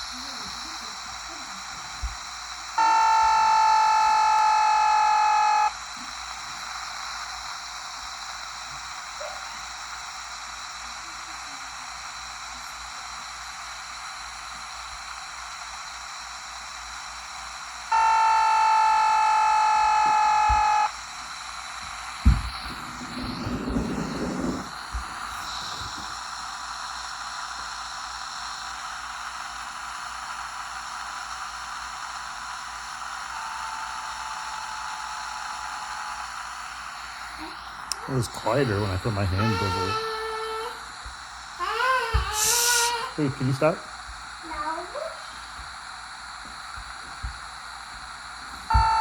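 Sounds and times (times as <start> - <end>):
walkie-talkie static hiss: 0.0 - 49.0
loud buzzing tone: 2.0 - 5.9, 17.8 - 21.0, 21.8 - 26.4, 32.9 - 43.5, 48.5 - 49.0
thump: 22.2 - 22.8.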